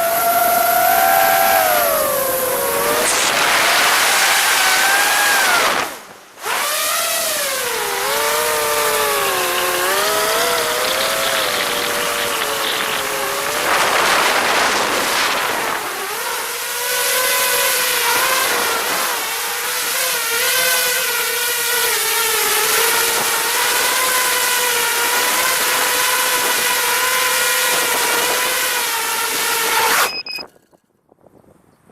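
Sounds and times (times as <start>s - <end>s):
drone motors whining: 0.0s - 30.7s.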